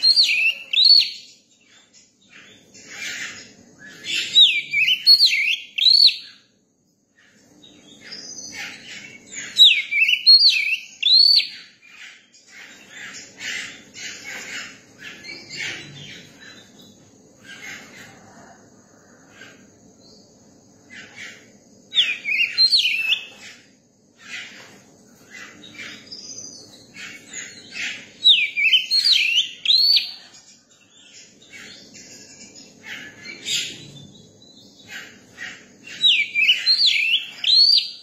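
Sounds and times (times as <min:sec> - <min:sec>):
bird whistling song: 0:00.0 - 0:01.4, 0:02.3 - 0:06.4, 0:07.7 - 0:16.7, 0:21.0 - 0:23.6, 0:25.3 - 0:30.3, 0:30.9 - 0:38.0.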